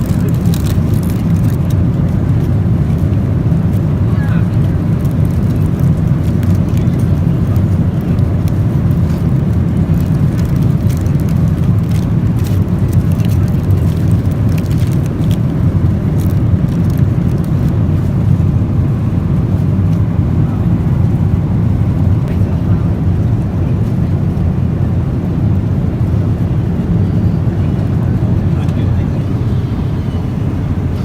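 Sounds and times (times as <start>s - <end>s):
aircraft cabin rumble: 0.0s - 31.0s.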